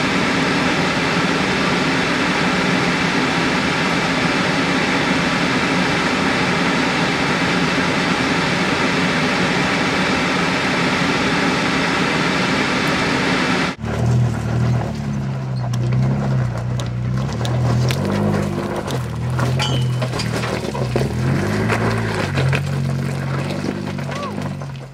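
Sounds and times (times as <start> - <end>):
engine running low: 0.0 - 24.9
clicks and rattles: 15.0 - 24.9.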